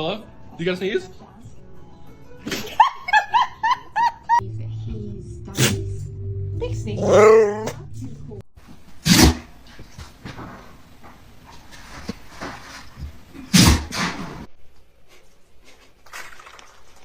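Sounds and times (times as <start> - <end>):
dog sneezing: 13.5 - 14.2.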